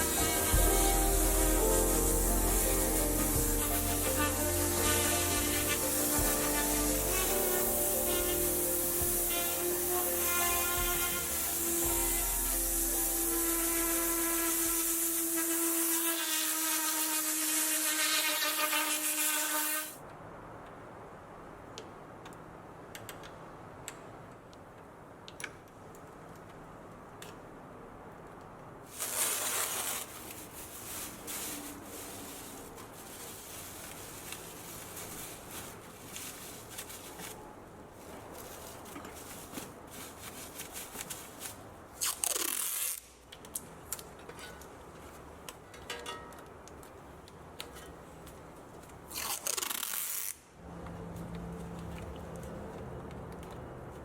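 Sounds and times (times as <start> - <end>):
loud hissing bursts: 0.0 - 20.0.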